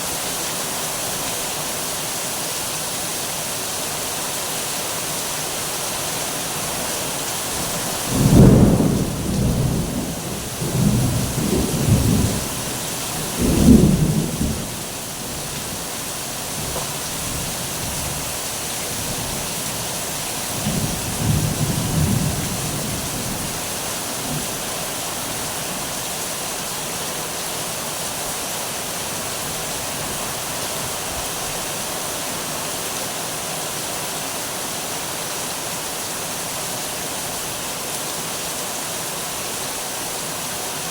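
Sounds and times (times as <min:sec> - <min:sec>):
steady rain: 0:00.0 - 0:40.9
rolling thunder: 0:08.1 - 0:14.9.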